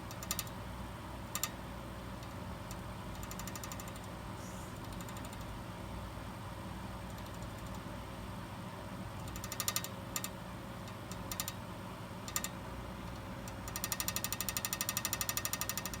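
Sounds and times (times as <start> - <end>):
rapid rattling ticks: 0.1 - 0.5, 2.2 - 4.1, 9.2 - 10.3, 12.3 - 12.5, 13.1 - 16.0.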